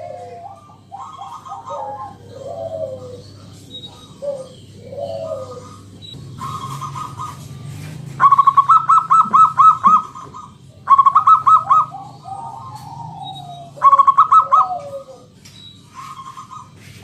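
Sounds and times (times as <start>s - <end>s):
dove cooing song: 0.0s - 17.0s
steady low hum: 0.0s - 17.0s
lower sliding bird calls: 1.2s - 17.0s.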